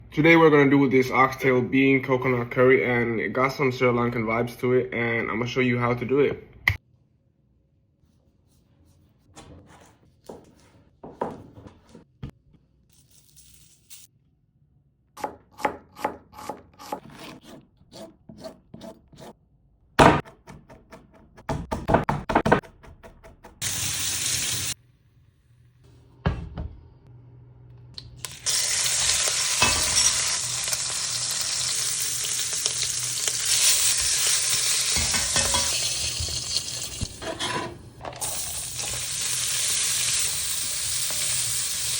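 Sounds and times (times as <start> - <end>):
kitchen knocks and clicks: 20.0 - 23.6, 26.2 - 26.8
food sizzling in a hot pan: 23.6 - 24.8, 28.4 - 37.1, 38.4 - 41.9.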